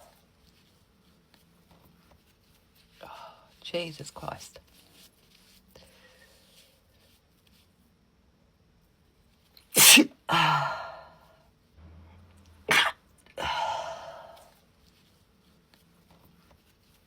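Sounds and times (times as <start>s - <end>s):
woman sneezing: 9.8s - 11.0s, 12.7s - 14.4s.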